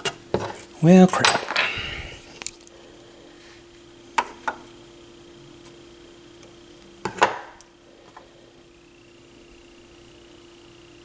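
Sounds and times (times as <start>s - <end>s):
faint steady hum: 0.0s - 11.0s
metal parts clinking: 1.1s - 1.7s.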